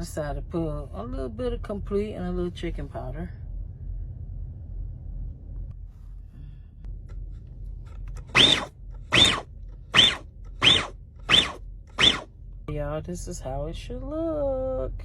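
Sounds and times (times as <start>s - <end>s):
food processor motor whine: 8.2s - 12.3s.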